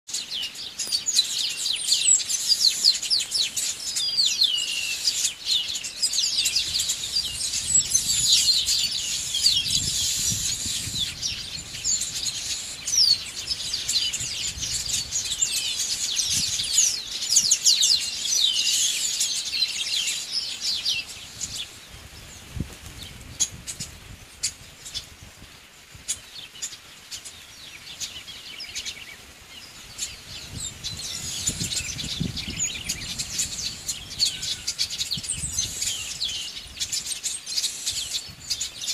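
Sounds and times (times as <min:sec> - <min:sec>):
birds chirping in chorus: 0:00.1 - 0:38.9.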